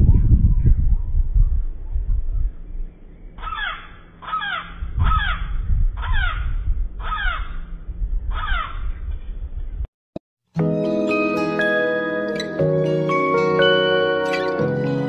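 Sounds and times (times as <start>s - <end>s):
crow cawing: 3.4s - 7.6s, 8.3s - 8.8s.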